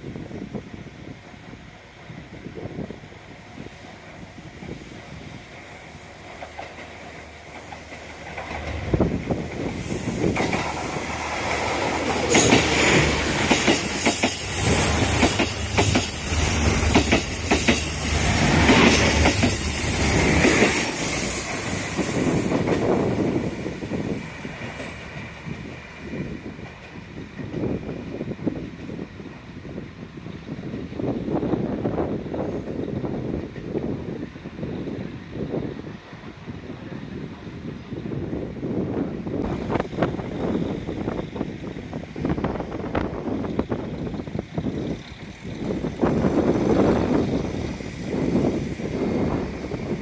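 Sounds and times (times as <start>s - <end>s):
train wheels clattering: 6.2s - 27.8s.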